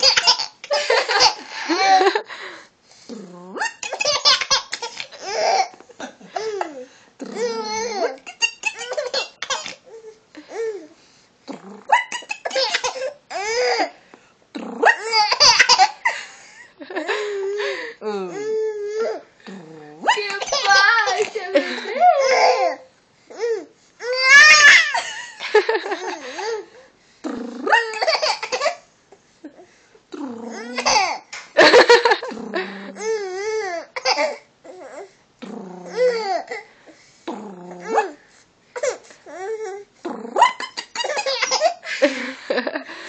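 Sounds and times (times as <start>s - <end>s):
baby laughing: 0.0s - 2.2s, 3.6s - 5.8s, 6.4s - 9.8s, 14.8s - 16.1s, 20.1s - 22.8s, 30.6s - 33.2s, 40.4s - 42.2s.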